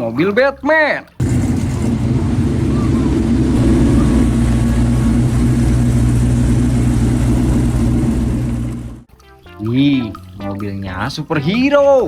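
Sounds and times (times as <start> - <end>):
low engine rumble: 1.2 - 9.1.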